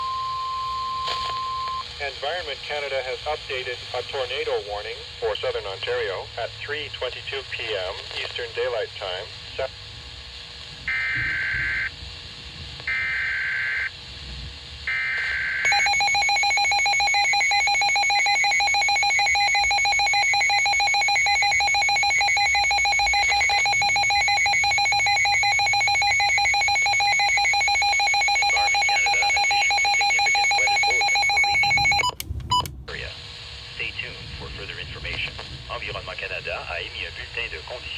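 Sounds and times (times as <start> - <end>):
data header tone bursts: 15.7 - 32.7.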